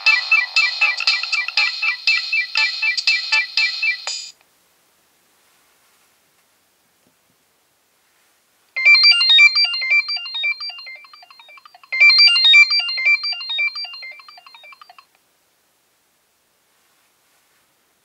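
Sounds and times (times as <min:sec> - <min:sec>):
mobile phone ringtone melody: 0:00.0 - 0:04.2, 0:08.8 - 0:15.1.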